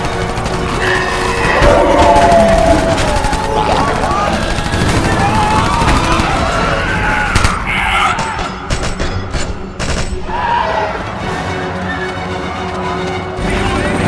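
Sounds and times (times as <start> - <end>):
automatic gunfire: 0.0 - 6.7
dramatic film score music: 0.0 - 14.0.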